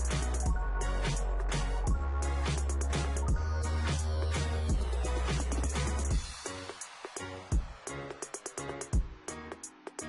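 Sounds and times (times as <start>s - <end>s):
kick drum hits: 6.1s - 6.4s, 7.6s - 7.8s, 9.0s - 9.2s.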